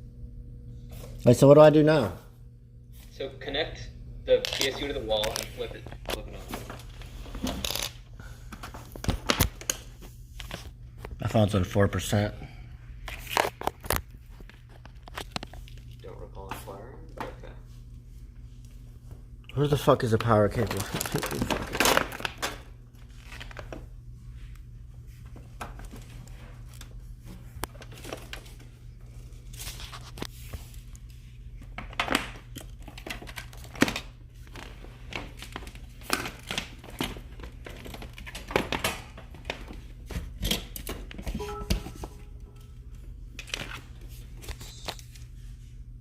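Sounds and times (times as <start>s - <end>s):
steady low hum: 0.0s - 46.0s
crinkling and rustling: 4.4s - 11.2s, 20.2s - 23.9s, 25.1s - 41.3s.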